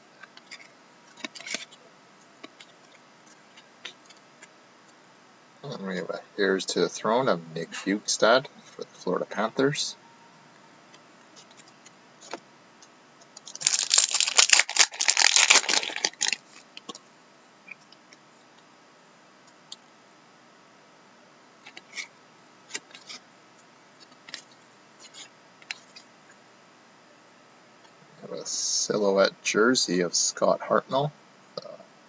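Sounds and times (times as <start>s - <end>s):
foil wrapper crinkling: 13.4s - 16.9s.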